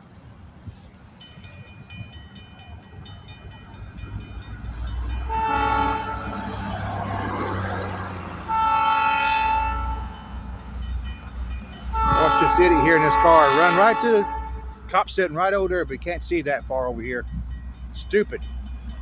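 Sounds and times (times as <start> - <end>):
locomotive engine rumble: 0.0 - 19.0
locomotive horn blasts: 5.2 - 6.7, 8.4 - 10.5, 11.8 - 14.9.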